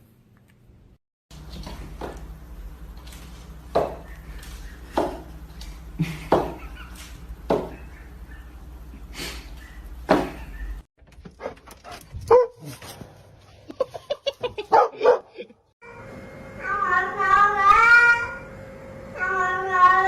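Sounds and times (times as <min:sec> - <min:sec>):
low hum: 0:15.8 - 0:20.0.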